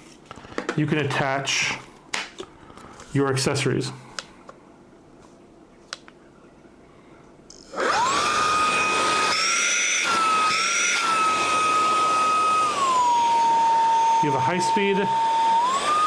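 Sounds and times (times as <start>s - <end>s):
handheld vacuum whine: 7.5s - 16.0s.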